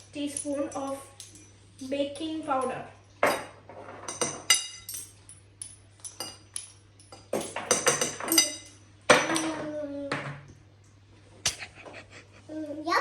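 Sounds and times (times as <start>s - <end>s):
metal spoon clinking against bowl: 0.0s - 1.6s, 2.2s - 9.6s.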